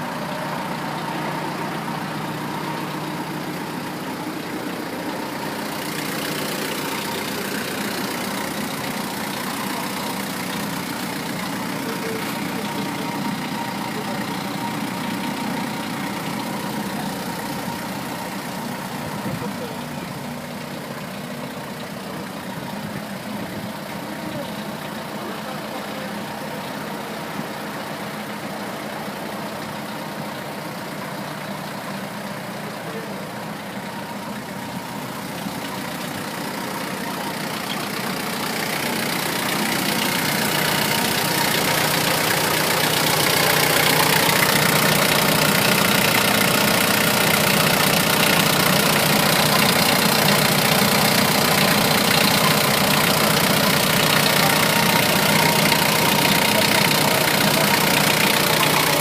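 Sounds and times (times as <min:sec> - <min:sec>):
diesel engine idling: 0:00.0 - 0:59.0.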